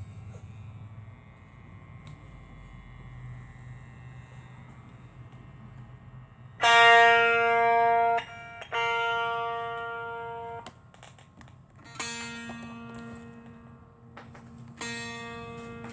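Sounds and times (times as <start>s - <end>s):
faint amplifier hum: 0.0s - 15.9s
electric guitar chords strummed: 6.6s - 15.9s.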